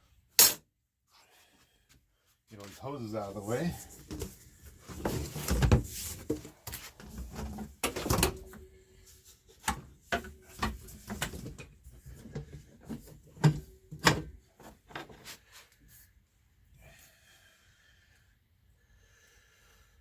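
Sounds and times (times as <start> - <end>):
workshop items knocking and rattling: 4.0 - 8.7, 9.6 - 15.3.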